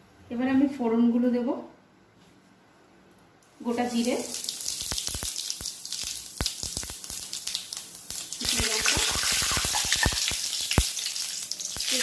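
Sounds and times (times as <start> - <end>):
frying sizzle: 3.6 - 12.0
seeds crackling in hot oil: 3.6 - 12.0.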